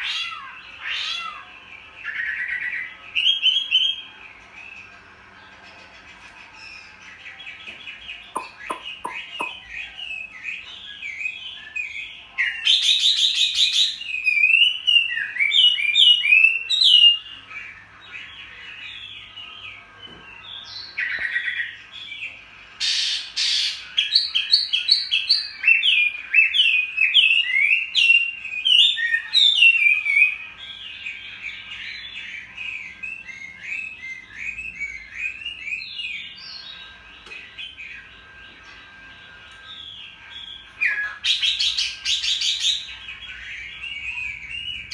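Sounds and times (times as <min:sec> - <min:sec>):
bird singing whistled phrases: 0:08.3 - 0:17.3.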